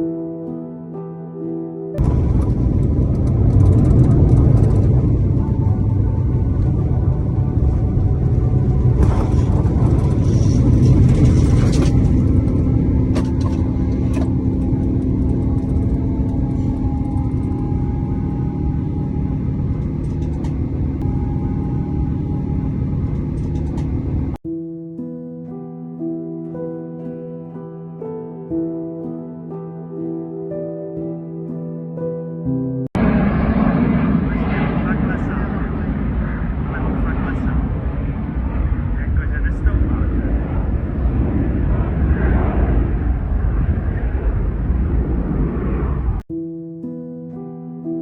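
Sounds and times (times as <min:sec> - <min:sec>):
steady hum: 0:02.0 - 0:24.4
aircraft rumble: 0:02.0 - 0:24.5, 0:29.0 - 0:46.4.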